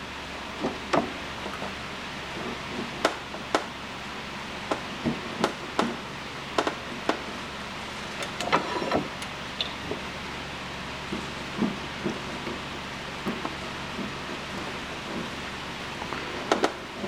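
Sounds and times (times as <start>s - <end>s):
steady low hum: 0.0s - 17.0s
sharp metal knocks and clicks: 6.6s - 7.2s.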